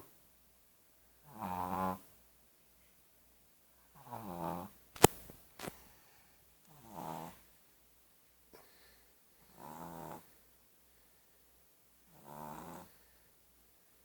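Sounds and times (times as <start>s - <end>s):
pet snoring: 1.2s - 2.1s, 4.0s - 4.7s, 6.7s - 7.4s, 9.4s - 10.3s, 12.1s - 13.0s
sharp click: 5.0s - 5.8s.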